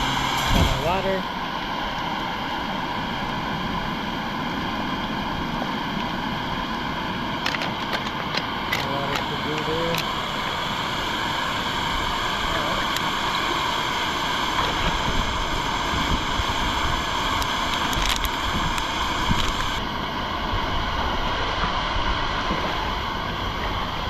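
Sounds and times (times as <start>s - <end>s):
wind rumbling on microphone: 10.2s - 24.0s.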